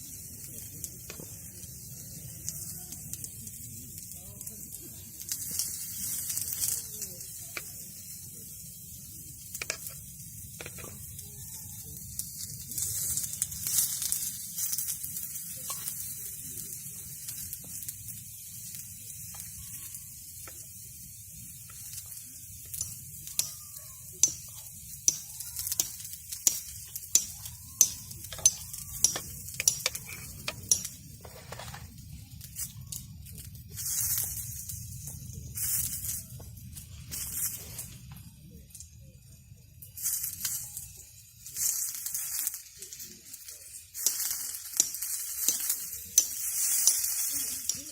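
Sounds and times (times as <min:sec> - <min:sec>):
food sizzling in a pan: 0:00.0 - 0:47.9
crackling pops: 0:12.2 - 0:39.0, 0:39.8 - 0:47.9.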